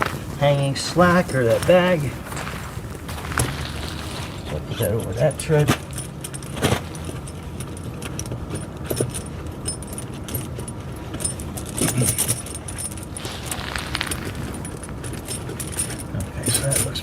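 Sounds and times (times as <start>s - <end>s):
chain links clinking: 1.9s - 16.9s.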